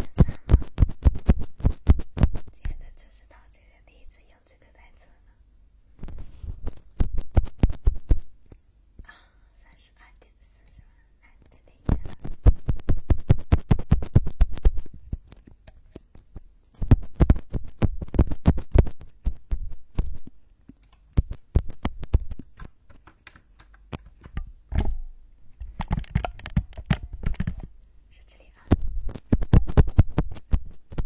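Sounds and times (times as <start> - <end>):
rapid close tapping and clicking: 0.0 - 3.0, 6.0 - 8.6, 11.4 - 27.7, 28.4 - 31.0.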